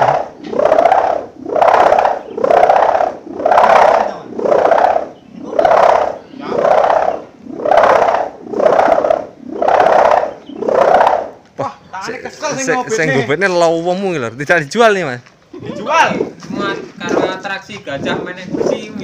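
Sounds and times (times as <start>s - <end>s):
kite hummer snoring drone: 0.0s - 11.4s.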